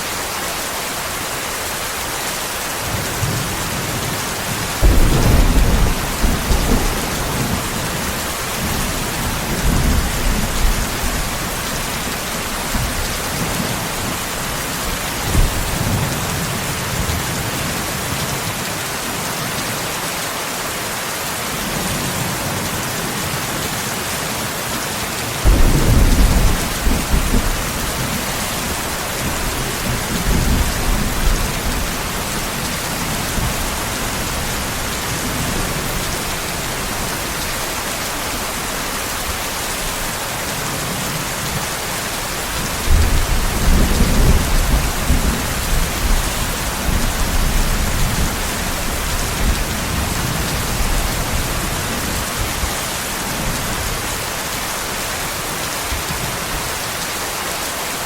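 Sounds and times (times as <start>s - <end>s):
steady rain: 0.0s - 58.0s
thunder rumbling: 4.7s - 16.2s, 25.4s - 37.6s.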